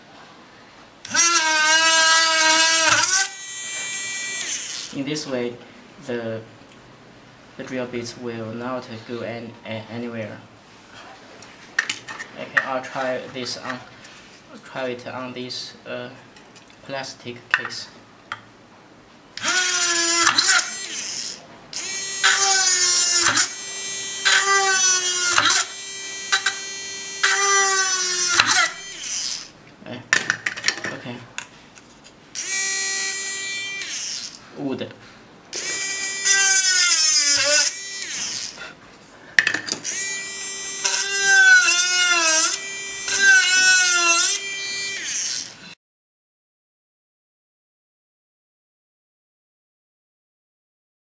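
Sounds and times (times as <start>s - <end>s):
mini drill whining into plastic: 1.1s - 5.0s, 19.4s - 29.6s, 32.4s - 34.4s, 35.5s - 38.6s, 39.8s - 45.8s.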